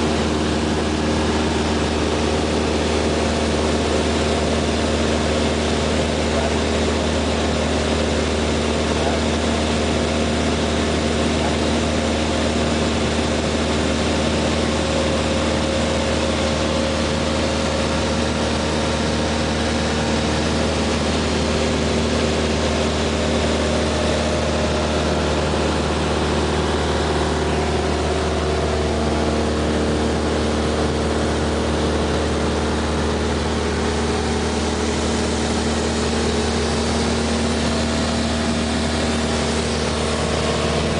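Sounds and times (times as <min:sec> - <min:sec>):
propeller aircraft engine droning: 0:00.0 - 0:40.9.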